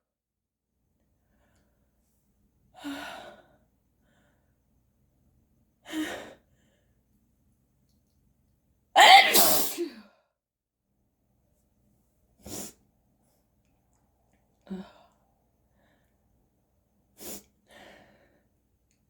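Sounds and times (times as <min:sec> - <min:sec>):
person gasping before sneeze: 0:09.0 - 0:10.0
person sneezing: 0:09.0 - 0:10.0.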